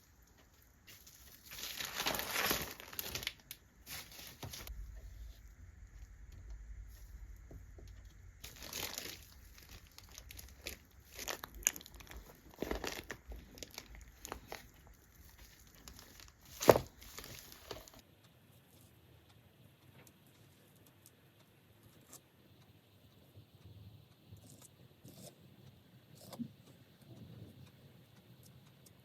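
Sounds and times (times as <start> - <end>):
crinkling and rustling: 0.0 - 18.0.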